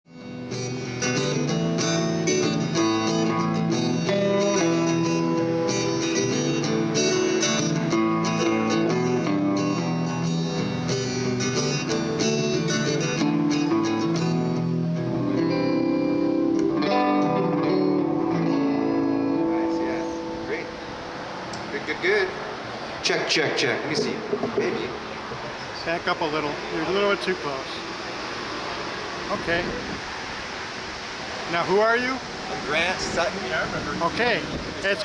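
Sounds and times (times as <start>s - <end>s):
guitar strumming chords: 0.1s - 21.7s.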